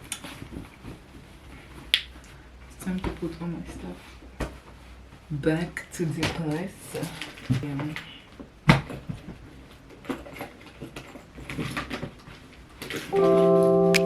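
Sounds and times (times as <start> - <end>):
background music with held notes: 13.1 - 14.0.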